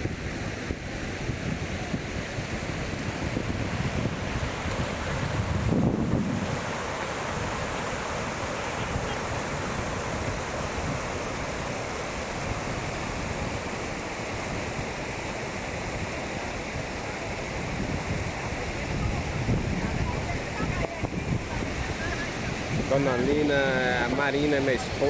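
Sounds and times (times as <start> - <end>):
wind buffeting microphone: 0.0 - 15.1, 15.7 - 25.0
waterfall rushing: 0.0 - 25.0.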